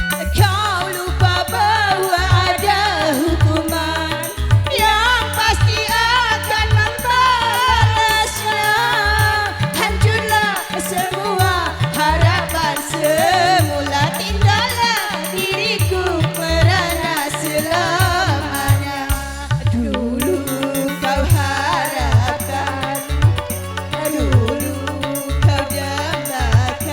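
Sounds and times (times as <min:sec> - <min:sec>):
hand drum and bass rhythm: 0:00.0 - 0:26.9.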